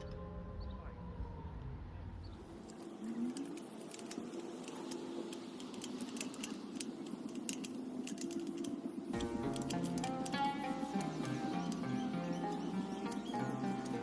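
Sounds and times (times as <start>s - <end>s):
background music: 0.0s - 3.3s, 9.1s - 14.0s
metallic clicks and rattles: 2.5s - 14.0s.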